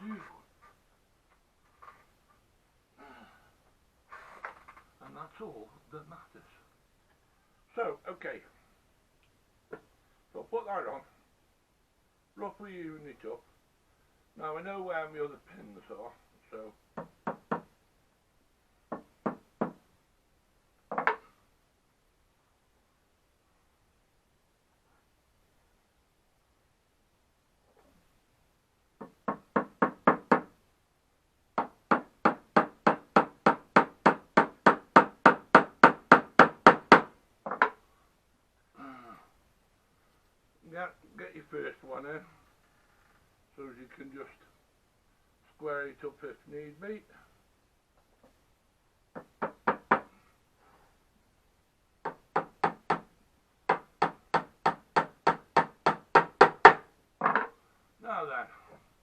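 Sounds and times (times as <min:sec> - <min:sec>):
hammer tapping pins into wood: 0:20.9 - 0:21.2, 0:31.6 - 0:37.8, 0:52.0 - 0:53.1, 0:53.7 - 0:57.5.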